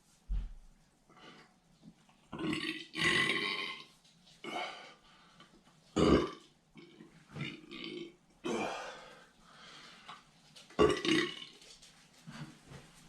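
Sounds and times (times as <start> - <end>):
man burping: 6.0 - 6.5, 7.4 - 9.0, 10.8 - 11.4.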